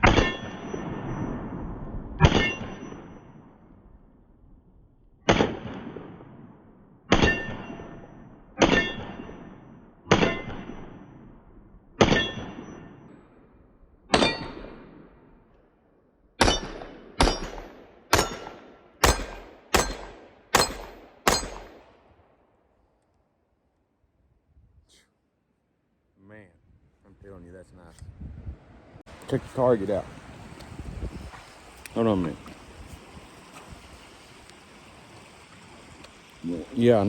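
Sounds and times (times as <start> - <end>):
pistol shots echoing: 14.1 - 15.0, 16.4 - 22.0.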